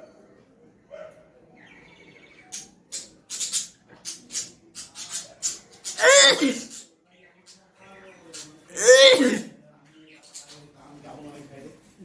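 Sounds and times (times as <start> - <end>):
person sneezing: 6.0 - 6.7, 8.8 - 9.5
person sniffing: 6.0 - 6.7, 8.8 - 9.5.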